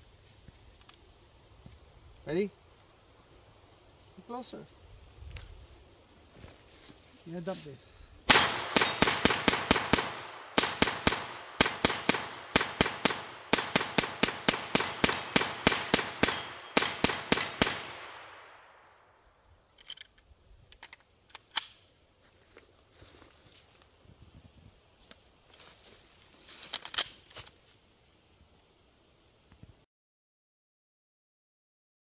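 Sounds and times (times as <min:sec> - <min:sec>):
rifle shots fired rapidly: 0:08.3 - 0:18.4.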